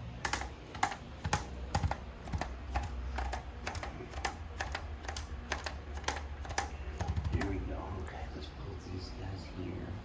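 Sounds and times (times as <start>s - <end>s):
steady low hum: 0.0s - 10.0s
sharp irregular clicks: 0.2s - 7.7s.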